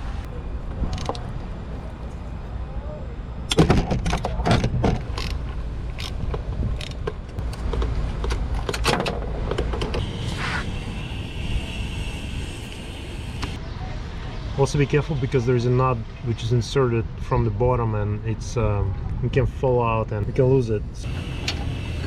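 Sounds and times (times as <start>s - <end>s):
faint high whine: 10.0s - 13.6s.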